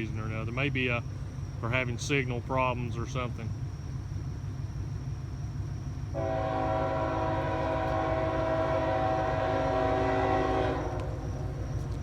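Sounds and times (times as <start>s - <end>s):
locomotive air horn blast: 6.1s - 11.2s.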